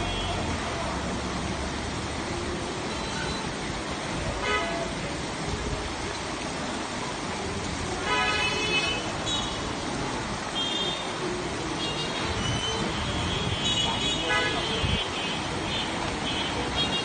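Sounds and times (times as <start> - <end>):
heavy rain pouring: 0.0 - 17.0
vehicle horns honking: 11.9 - 15.4.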